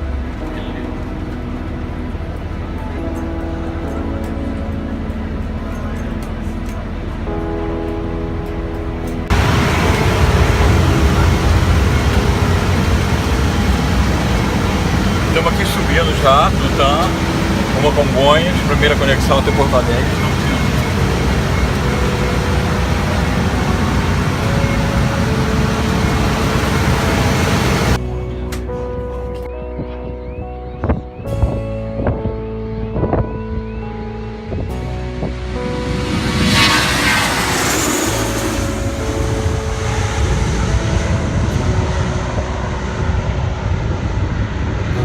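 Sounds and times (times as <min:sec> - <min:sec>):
faint whining tones: 0:09.1 - 0:28.0
jet airliner rumble and hiss: 0:09.2 - 0:28.0, 0:34.6 - 0:45.0
rushing air: 0:09.3 - 0:28.0, 0:34.4 - 0:45.0.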